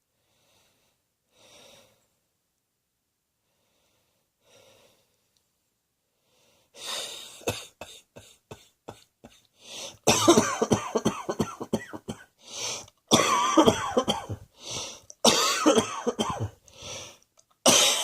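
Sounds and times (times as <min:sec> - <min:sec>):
person breathing faintly: 0:00.1 - 0:02.2, 0:03.4 - 0:05.4, 0:06.1 - 0:10.1, 0:12.4 - 0:13.0, 0:14.3 - 0:15.2, 0:16.4 - 0:17.3
person coughing: 0:07.3 - 0:09.4, 0:10.0 - 0:12.3, 0:13.1 - 0:14.5, 0:15.2 - 0:16.6, 0:17.7 - 0:18.0.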